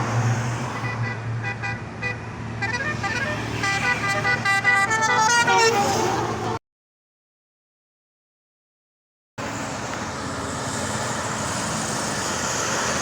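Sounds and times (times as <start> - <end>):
bus engine hum: 0.0 - 6.6, 9.4 - 13.0
musical air horn playing a tune: 0.8 - 6.6.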